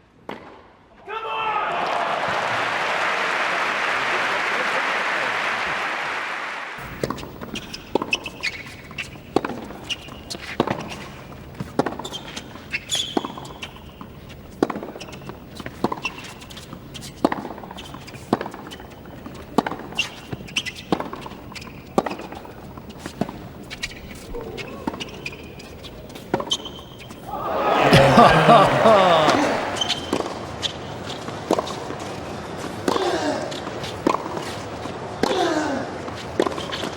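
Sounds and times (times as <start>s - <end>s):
tennis ball bouncing on court: 14.6s - 18.9s
quiet crowd: 27.2s - 30.5s.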